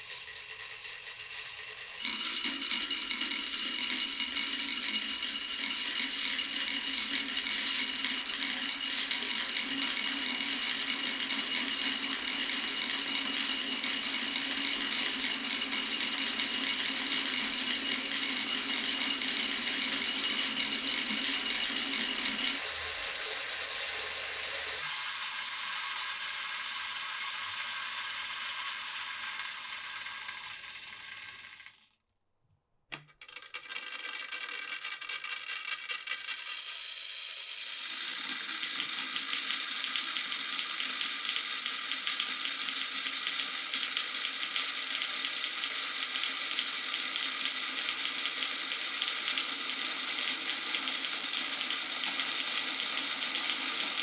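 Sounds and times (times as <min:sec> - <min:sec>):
marbles clattering on wooden run: 0:00.0 - 0:02.1, 0:22.6 - 0:31.8, 0:33.2 - 0:38.8.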